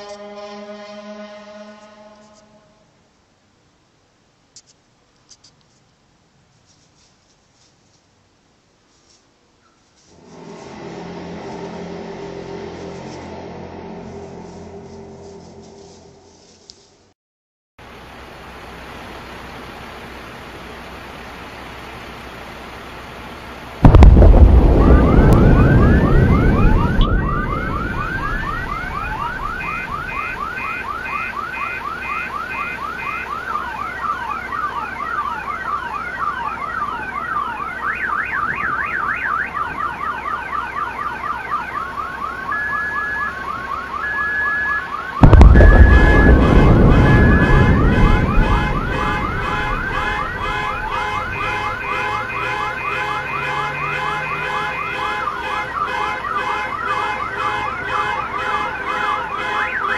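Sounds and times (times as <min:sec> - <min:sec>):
siren-like wails: 0:10.2 - 0:16.2, 0:23.8 - 0:59.9
loud boom rumbling: 0:23.8 - 0:30.6, 0:45.2 - 0:52.3.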